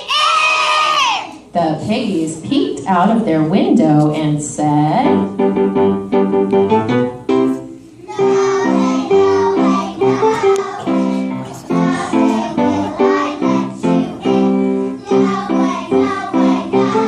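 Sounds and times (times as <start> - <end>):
instrumental accompaniment: 5.0 - 17.0
children singing in chorus: 8.0 - 17.0.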